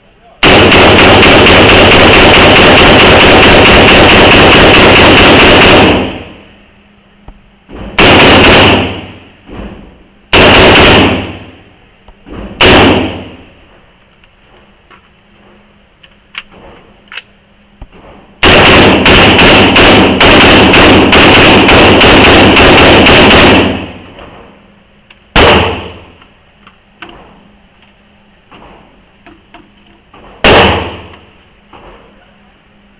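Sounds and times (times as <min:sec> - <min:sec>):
loud gunshots: 0:00.4 - 0:06.4, 0:08.0 - 0:09.2, 0:10.3 - 0:11.6, 0:12.6 - 0:13.5, 0:18.4 - 0:24.1, 0:25.3 - 0:26.1, 0:30.4 - 0:31.1.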